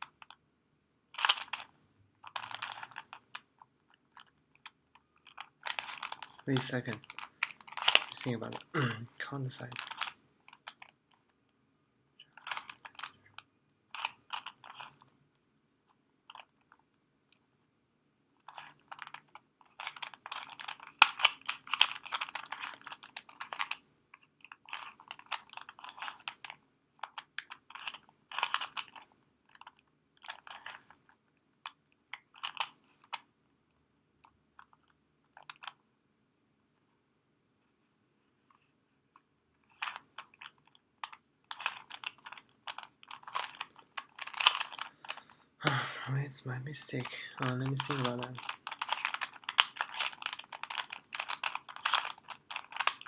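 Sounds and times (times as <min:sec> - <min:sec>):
puzzle cube twisting clicks: 0:01.1 - 0:08.7, 0:09.4 - 0:11.3, 0:12.2 - 0:15.1, 0:16.3 - 0:16.8, 0:18.4 - 0:31.1, 0:31.7 - 0:33.3, 0:39.7 - 0:45.4, 0:46.9 - 0:53.0.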